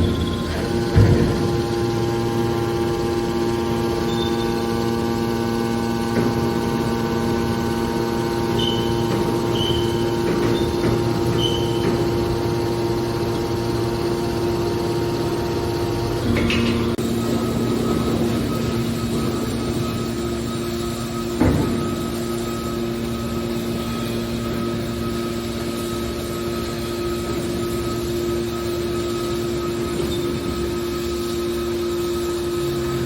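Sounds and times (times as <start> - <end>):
hydraulic baler humming: 0.0 - 33.0
short high squeaks: 8.5 - 12.1.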